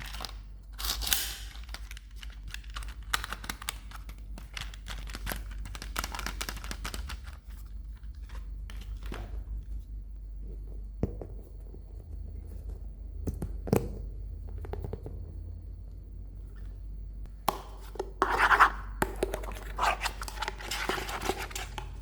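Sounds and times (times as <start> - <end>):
packaging crinkling and tearing: 0.0 - 9.3.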